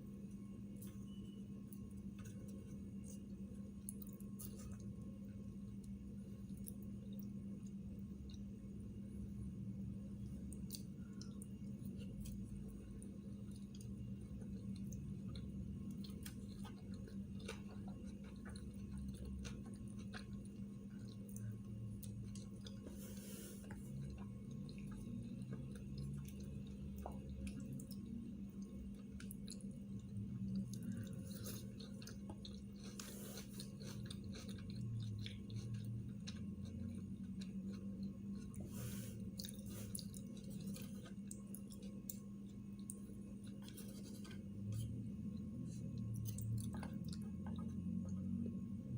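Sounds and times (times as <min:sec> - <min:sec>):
steady low hum: 0:00.0 - 0:48.9
person chewing food: 0:00.8 - 0:08.8, 0:10.2 - 0:48.6.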